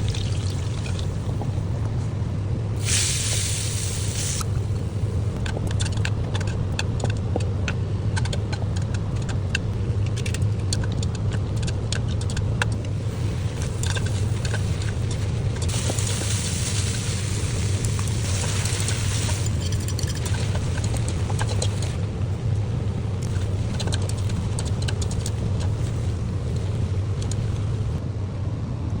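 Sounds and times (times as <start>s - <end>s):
noodles sizzling: 0.0s - 2.2s, 2.8s - 6.7s, 12.1s - 28.0s
steady low hum: 0.0s - 29.0s.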